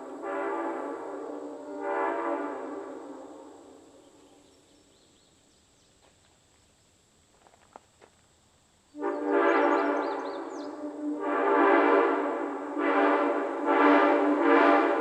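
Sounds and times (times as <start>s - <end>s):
locomotive air horn chord: 0.0s - 4.2s, 8.9s - 15.0s.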